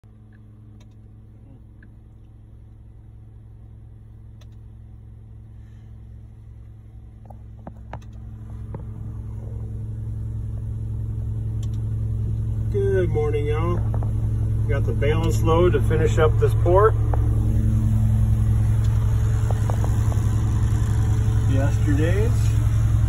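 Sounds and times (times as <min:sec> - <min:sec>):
diesel engine humming: 0:00.0 - 0:23.0
faint clicks: 0:11.6 - 0:11.8.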